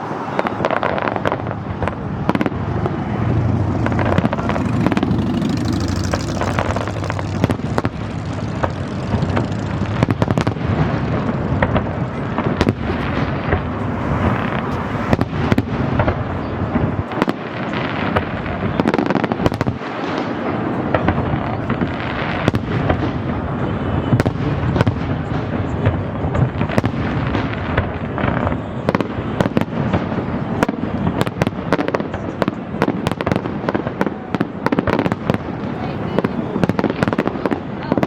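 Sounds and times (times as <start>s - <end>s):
fireworks bangs and crackles: 0.0s - 38.0s.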